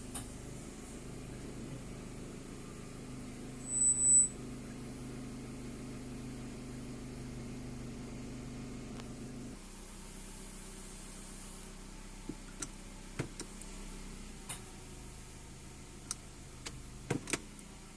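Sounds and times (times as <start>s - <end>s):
car engine idling: 0.0s - 17.9s
short electronic beep: 3.6s - 4.4s.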